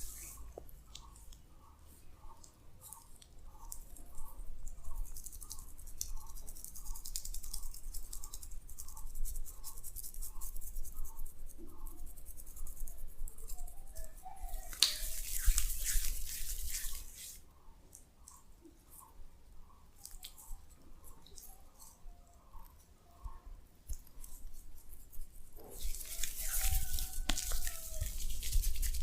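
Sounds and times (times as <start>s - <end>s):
hands scrubbing on skin: 14.5s - 17.4s, 23.9s - 29.0s.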